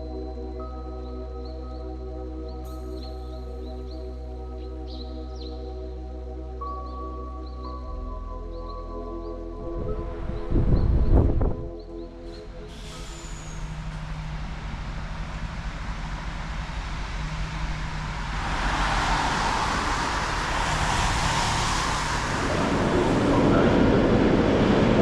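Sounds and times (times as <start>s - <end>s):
low engine hum: 9.6s - 25.0s
rush of noise: 12.3s - 25.0s.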